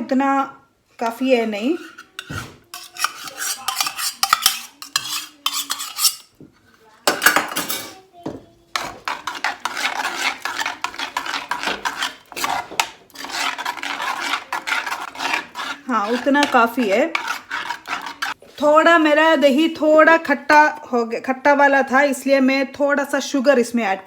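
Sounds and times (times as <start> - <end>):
spoon clinking and scraping in pot: 1.0 - 18.6.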